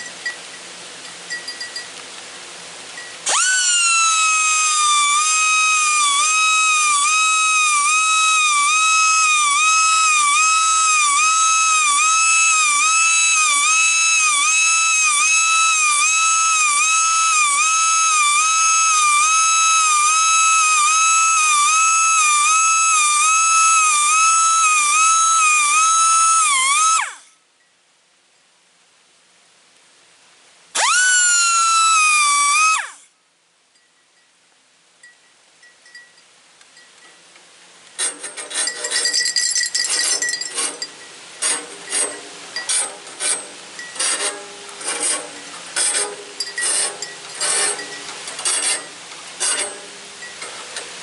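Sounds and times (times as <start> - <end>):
electric sharpening tool whining: 3.2 - 27.2, 30.8 - 33.0.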